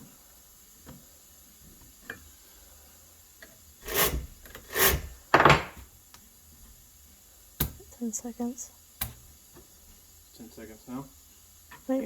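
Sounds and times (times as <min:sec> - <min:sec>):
chainsaw chain rasping along bar: 0:03.8 - 0:05.2.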